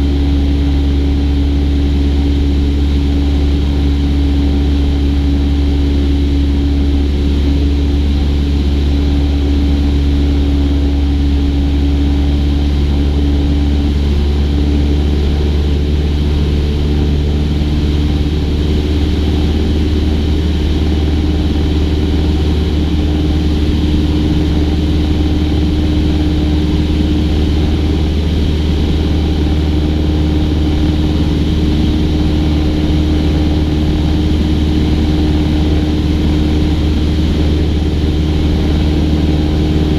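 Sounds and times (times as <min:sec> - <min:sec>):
propeller plane engine drone: 0:00.0 - 0:39.9.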